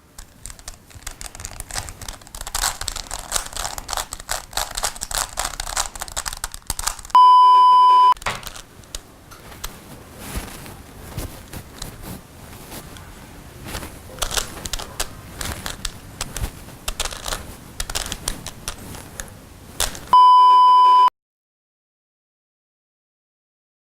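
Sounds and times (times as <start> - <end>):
steady electronic beep: 7.2 - 8.2, 20.2 - 21.1.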